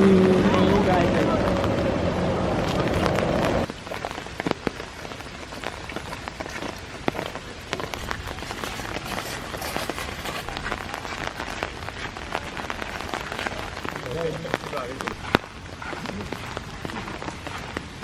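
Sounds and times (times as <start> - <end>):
raindrops ticking: 0.0 - 18.0
steady rain falling: 0.0 - 18.0.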